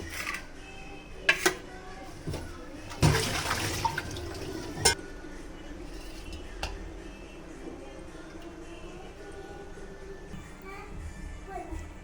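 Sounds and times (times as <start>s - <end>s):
water pouring into a vessel: 2.9s - 5.0s.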